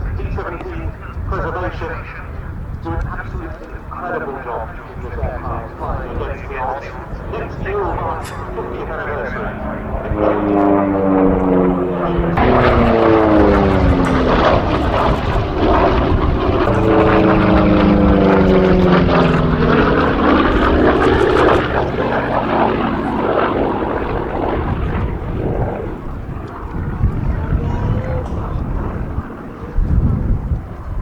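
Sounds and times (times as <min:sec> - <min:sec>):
propeller plane flying past: 0:03.5 - 0:31.0.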